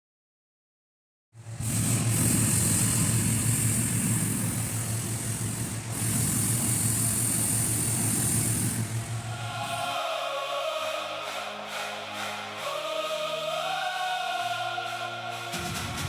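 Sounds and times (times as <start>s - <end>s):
hot air balloon burner roar: 1.6s - 9.9s
low hum: 7.9s - 16.0s.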